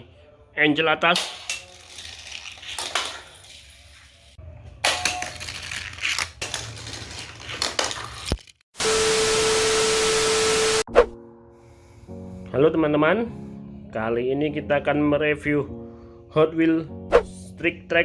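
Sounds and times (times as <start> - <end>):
toy car and plastic track clattering: 1.2 - 8.6.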